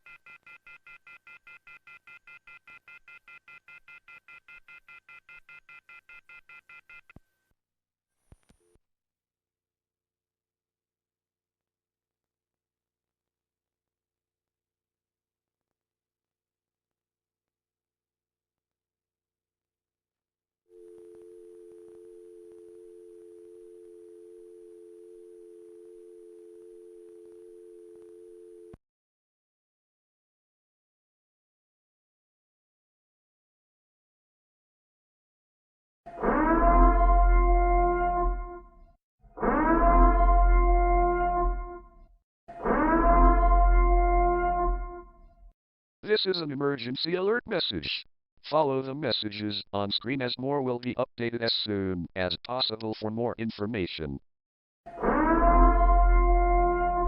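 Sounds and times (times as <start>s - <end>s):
telephone off-hook warning tone: 20.8s - 28.8s.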